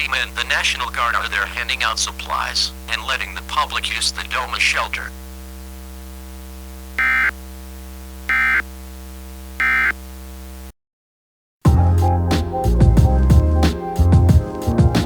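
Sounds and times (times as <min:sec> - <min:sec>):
steady electrical hum: 0:00.0 - 0:10.4
music: 0:11.7 - 0:15.0.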